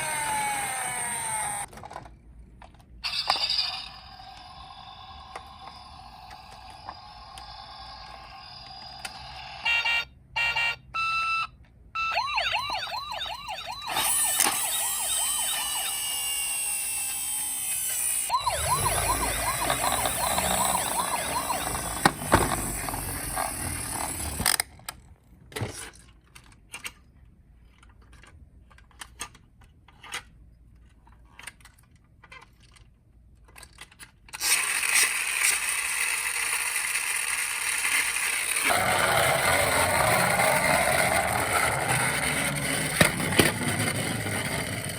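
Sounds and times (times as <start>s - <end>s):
warbling toy siren: 0.0s - 1.7s, 3.0s - 24.4s, 34.4s - 43.3s
toy siren beeps: 8.0s - 17.5s, 18.2s - 23.1s.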